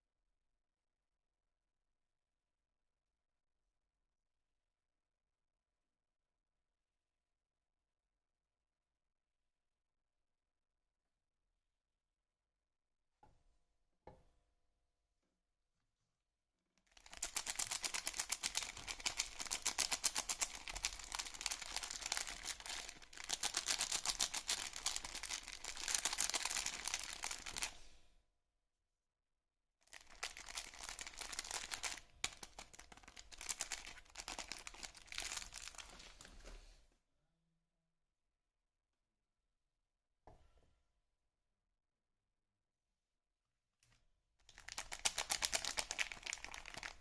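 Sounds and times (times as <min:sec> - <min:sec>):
soap packaging crinkling and tearing: 0:16.9 - 0:27.8, 0:29.9 - 0:36.5, 0:44.4 - 0:47.0.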